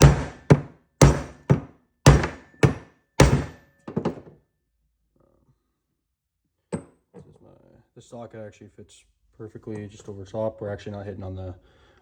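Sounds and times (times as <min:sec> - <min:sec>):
hammer striking metal socket: 0:00.0 - 0:04.2.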